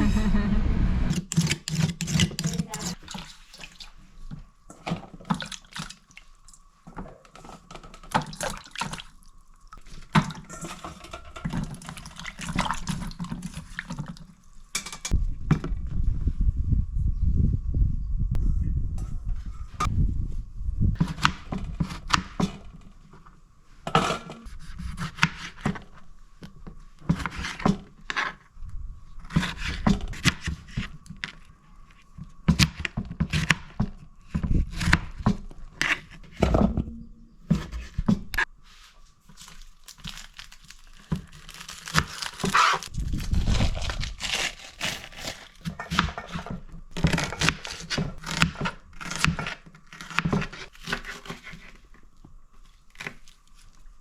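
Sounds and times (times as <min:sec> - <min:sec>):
packaging crinkling and tearing: 0:39.2 - 0:45.8.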